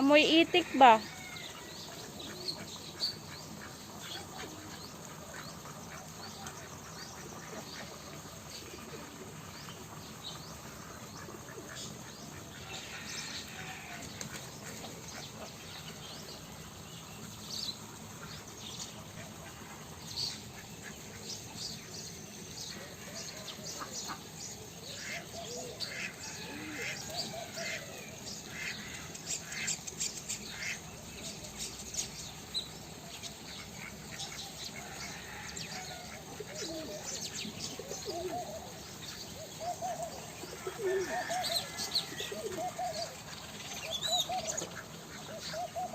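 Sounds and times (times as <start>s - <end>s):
birds chirping: 0.0s - 45.9s
doves cooing: 3.5s - 16.0s, 22.7s - 29.9s, 33.6s - 45.9s.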